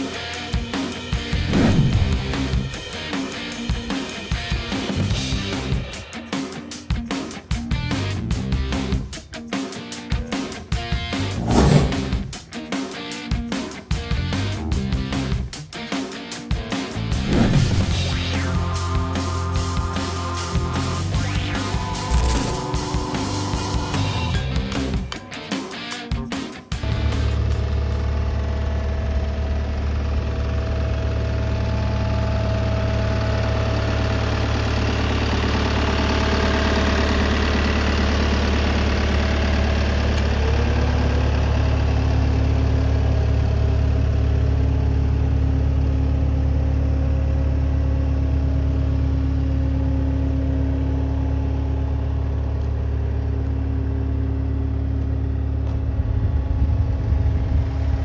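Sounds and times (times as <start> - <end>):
diesel engine idling: 0.0 - 3.7, 17.0 - 25.2, 26.8 - 58.0
whining tone rising in pitch: 17.2 - 25.0.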